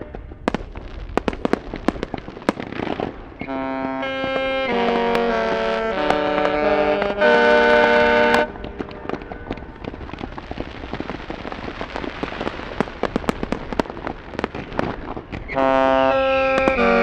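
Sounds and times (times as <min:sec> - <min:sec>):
sharp pops and crackles: 0:00.0 - 0:15.7, 0:16.5 - 0:17.0
musical ship horn chord: 0:03.5 - 0:09.2.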